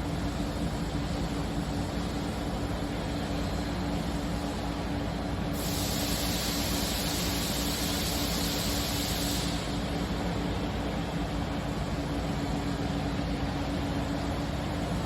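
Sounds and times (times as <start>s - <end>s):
hiss: 5.5s - 10.7s.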